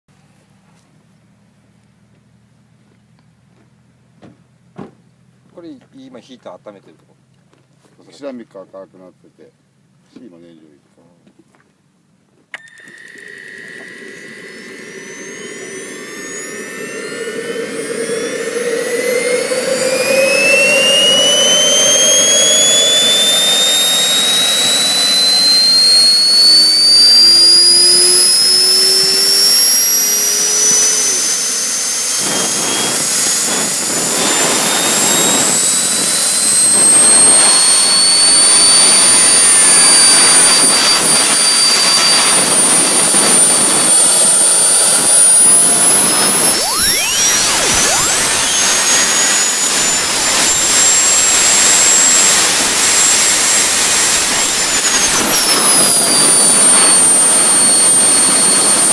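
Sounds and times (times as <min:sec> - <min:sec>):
jet turbine whine: 0:12.5 - 0:58.9
turbine rushing noise: 0:12.6 - 0:58.9.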